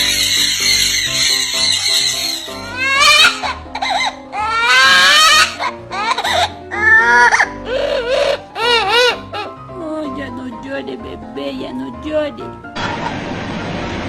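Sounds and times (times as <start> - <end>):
parrot mimicking crying baby: 0.0 - 9.7.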